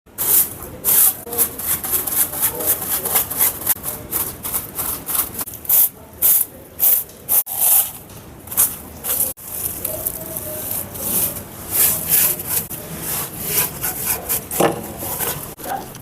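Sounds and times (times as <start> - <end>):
grooming tool scraping horse: 10.8 - 15.6.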